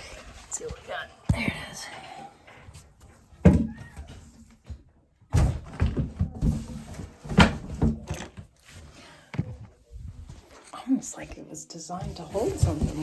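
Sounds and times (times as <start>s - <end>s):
toilet parts knocking and thumping: 3.4s - 3.8s, 4.7s - 8.5s.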